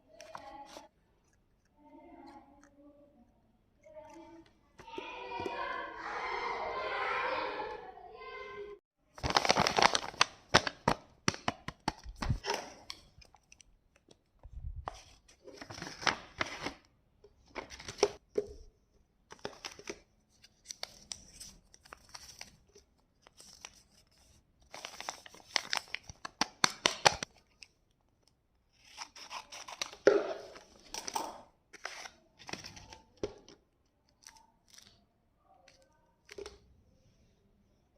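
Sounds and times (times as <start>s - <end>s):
packaging tearing and rustling: 9.2s - 12.8s, 24.6s - 27.3s, 28.8s - 31.2s.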